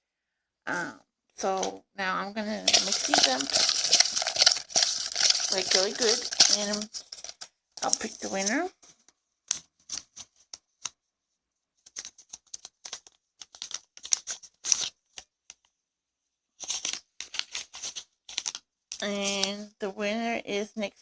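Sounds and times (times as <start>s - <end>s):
paper slips rustling: 2.5s - 8.7s, 16.6s - 19.6s.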